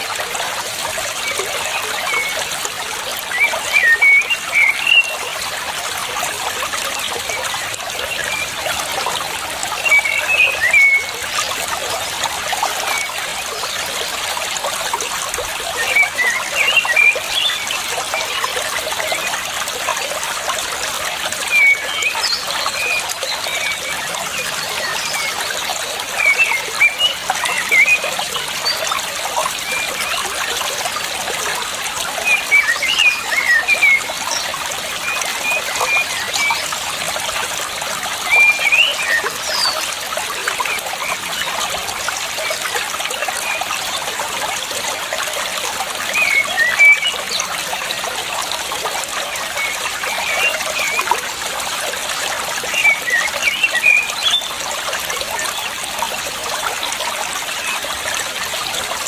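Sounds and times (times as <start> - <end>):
water trickling: 0.0 - 59.0.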